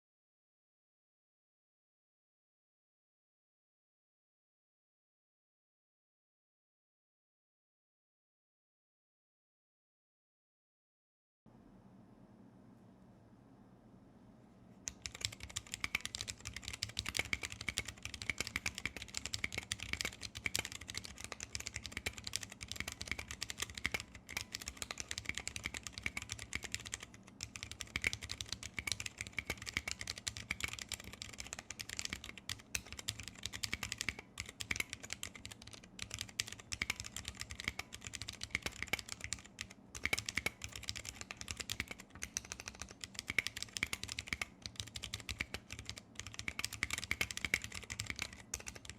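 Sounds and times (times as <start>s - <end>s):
fast typing on mechanical keyboard: 14.9s - 48.9s.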